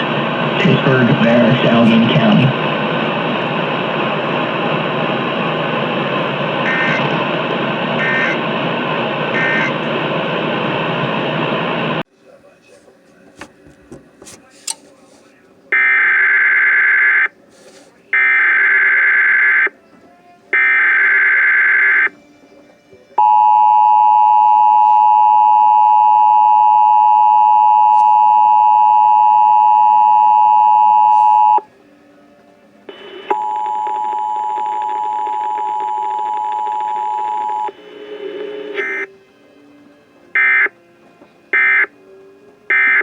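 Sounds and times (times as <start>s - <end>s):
hissy attention tone: 6.0s - 8.5s
buzzy digital bursts: 6.6s - 7.2s, 8.0s - 8.4s, 9.3s - 9.8s
two-tone attention signal: 6.7s - 7.2s, 8.0s - 8.4s, 9.3s - 9.8s, 23.2s - 31.7s, 32.9s - 39.2s, 40.4s - 40.8s, 41.6s - 42.0s, 42.7s - 43.0s.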